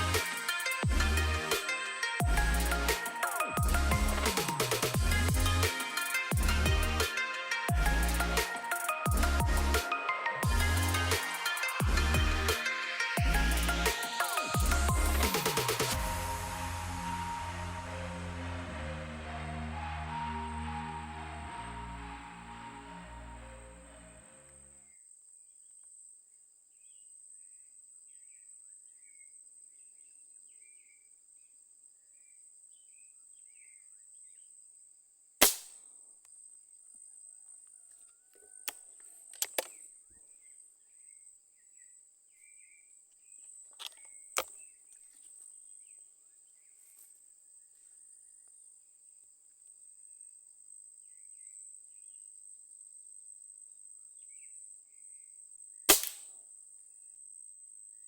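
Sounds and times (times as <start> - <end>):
sharp cracks and snaps: 35.4 - 35.8, 38.6 - 39.8, 55.9 - 56.4.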